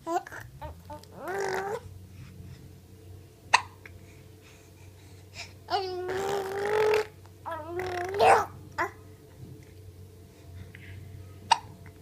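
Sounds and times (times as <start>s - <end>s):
dog wavering vocal sound: 0.1s - 1.9s, 5.7s - 9.0s
dog hiccup: 8.0s - 8.5s.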